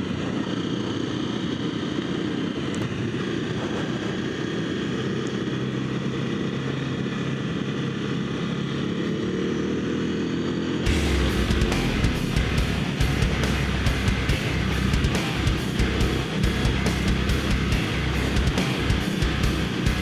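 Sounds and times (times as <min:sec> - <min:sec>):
dirt bike engine running: 0:10.8 - 0:20.0.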